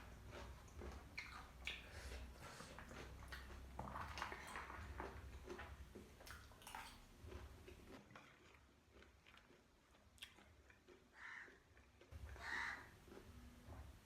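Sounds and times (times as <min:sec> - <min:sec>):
crunching and chewing: 0:00.0 - 0:14.0
low steady hum: 0:11.7 - 0:14.0.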